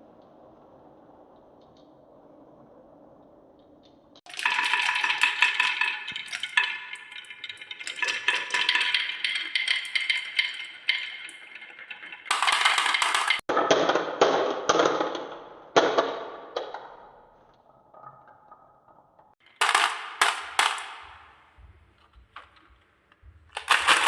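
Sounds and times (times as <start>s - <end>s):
marbles rolling in wooden run: 4.2s - 22.6s, 23.3s - 24.0s.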